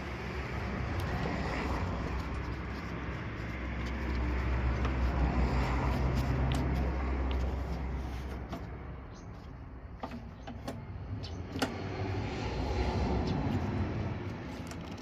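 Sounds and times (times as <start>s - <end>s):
lawn mower parts clicking: 9.9s - 11.9s, 14.3s - 15.0s.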